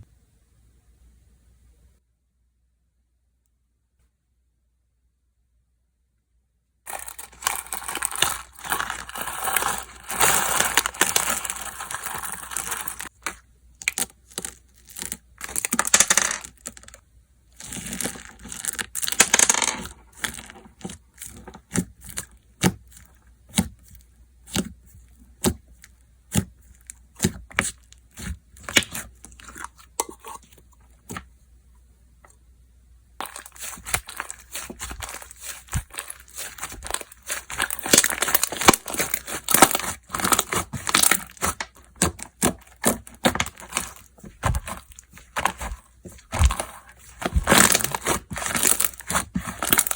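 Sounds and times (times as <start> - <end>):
slime crinkling and tearing: 6.9 - 15.9, 17.6 - 19.2, 33.2 - 49.9.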